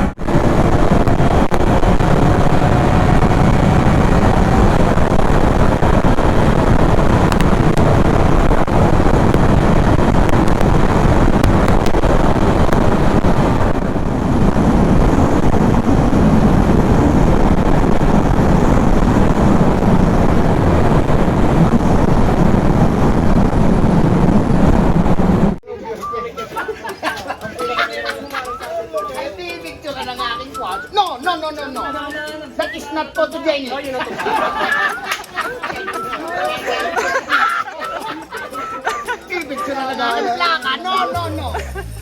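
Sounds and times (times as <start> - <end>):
motorcycle engine running: 0.0 - 25.6
wind rushing on microphone: 0.0 - 25.6.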